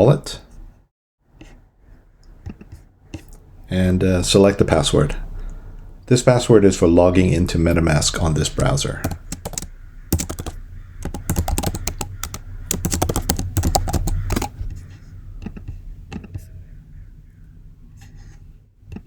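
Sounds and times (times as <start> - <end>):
computer keyboard typing: 8.5 - 14.6.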